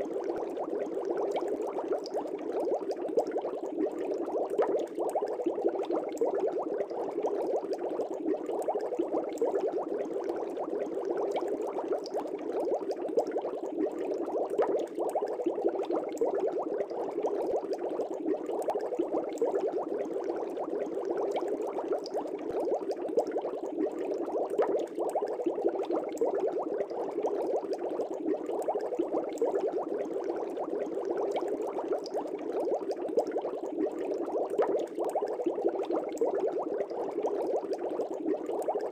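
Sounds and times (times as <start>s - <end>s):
aquarium air bubbling: 0.0s - 38.9s.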